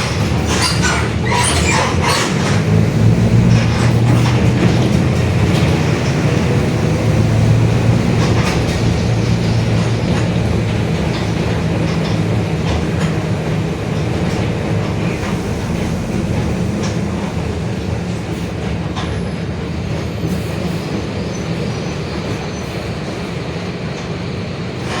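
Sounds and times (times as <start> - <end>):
body rattles and clicks: 0.0 - 19.2
bus engine drone: 0.0 - 25.0.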